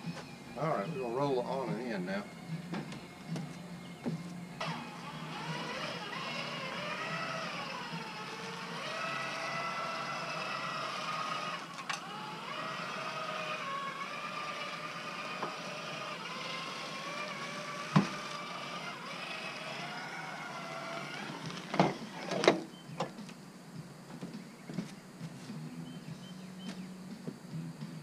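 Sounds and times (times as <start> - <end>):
electric motor whining: 0.0 - 22.7.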